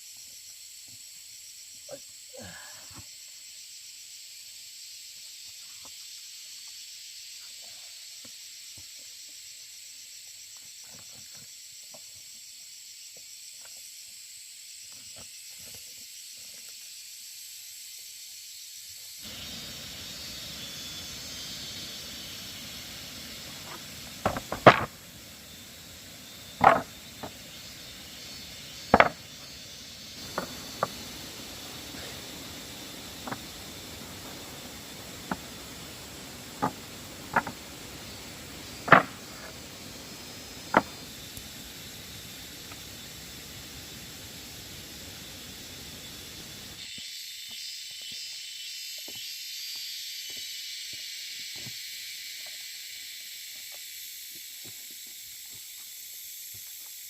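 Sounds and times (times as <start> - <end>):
high-pitched hiss: 0.0 - 57.0.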